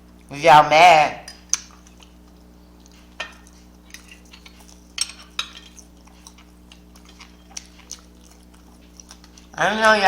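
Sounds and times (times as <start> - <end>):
steady low hum: 0.0 - 10.0
tableware clicking and tapping: 5.0 - 5.8.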